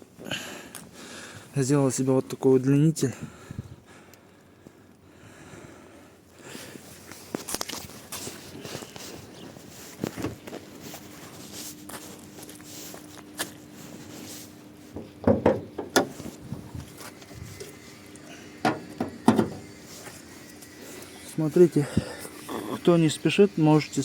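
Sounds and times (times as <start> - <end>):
hand tools clicking and knocking: 15.2 - 16.3, 18.6 - 19.7.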